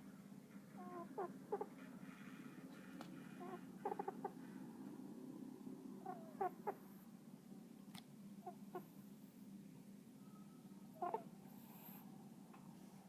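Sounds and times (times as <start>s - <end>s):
squeaky whistles: 10.2s - 10.8s.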